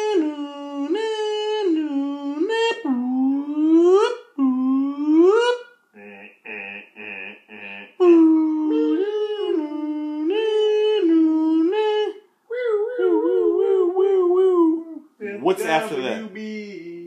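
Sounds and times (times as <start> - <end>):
voice imitating car alarm: 2.6 - 12.2.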